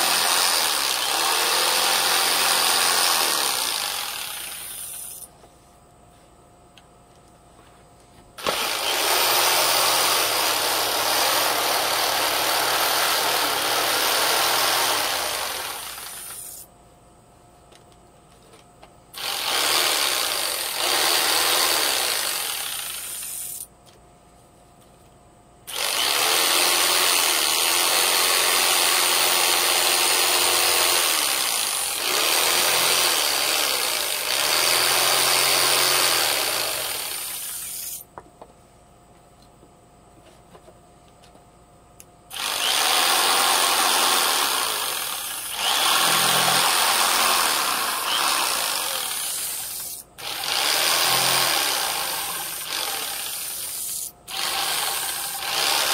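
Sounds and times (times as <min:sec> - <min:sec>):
power tool running: 0:00.0 - 0:05.3, 0:08.4 - 0:16.7, 0:19.1 - 0:23.6, 0:25.7 - 0:38.0, 0:42.3 - 0:55.9.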